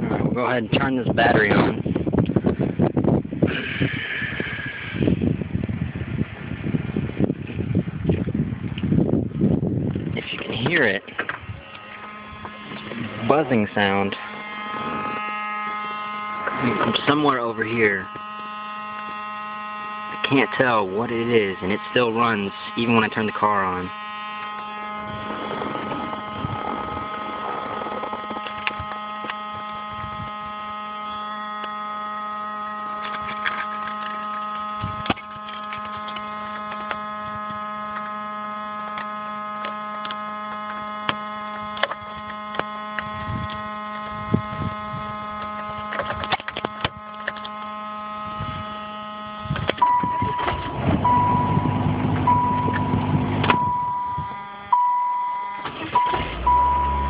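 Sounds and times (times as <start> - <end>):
electrical buzz with whine: 0.0 - 57.0
steady beeping tone: 10.6 - 57.0
low rumble: 24.4 - 28.9, 49.4 - 54.8.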